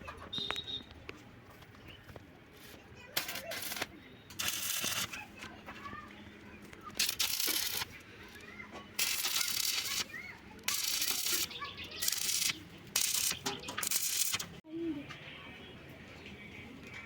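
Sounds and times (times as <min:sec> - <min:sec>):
bursts of hissing: 0:03.2 - 0:05.2, 0:09.0 - 0:14.6.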